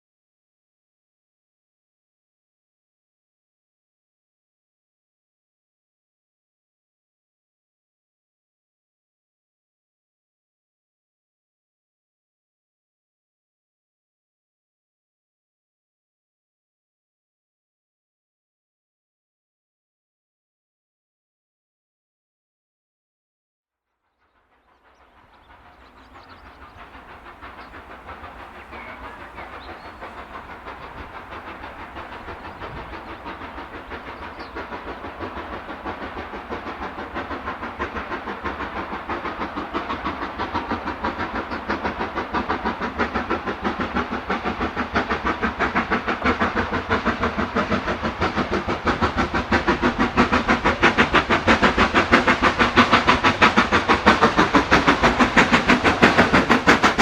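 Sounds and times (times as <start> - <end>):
steam locomotive exhaust beats: 24.2 - 57.0.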